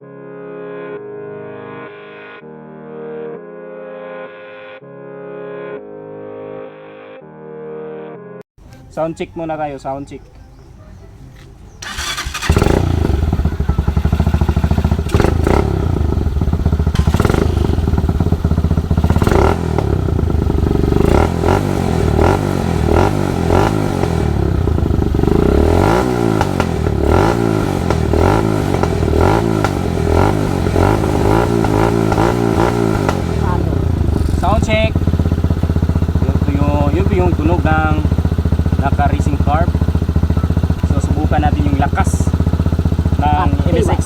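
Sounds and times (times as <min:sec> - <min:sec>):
motorcycle engine revving: 0:11.3 - 0:44.0.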